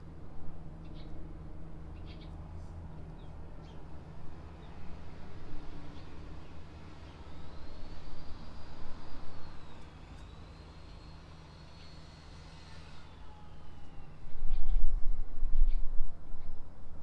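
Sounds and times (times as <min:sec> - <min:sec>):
distant vehicle noise: 0:00.0 - 0:17.0
faint high whine: 0:05.2 - 0:17.0.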